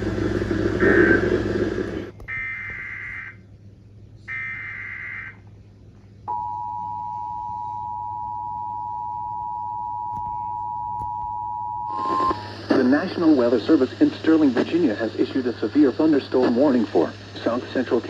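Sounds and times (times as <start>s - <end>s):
two-tone attention signal: 6.3s - 12.5s.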